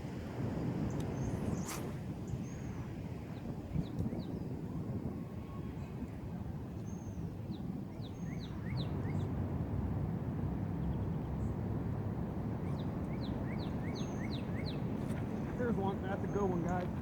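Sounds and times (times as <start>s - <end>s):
wind rumbling on microphone: 0.0s - 17.0s
songbird whistling and chirping: 7.9s - 9.3s, 12.6s - 14.8s.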